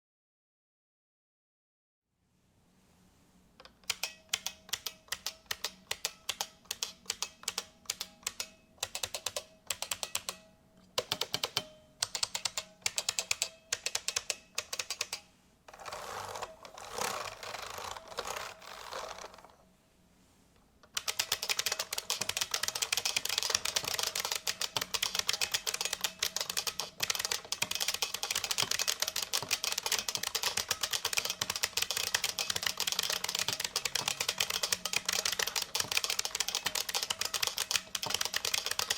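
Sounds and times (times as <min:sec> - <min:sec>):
keyboard keys clicking: 0:03.9 - 0:10.4, 0:11.0 - 0:15.2, 0:20.9 - 0:38.9.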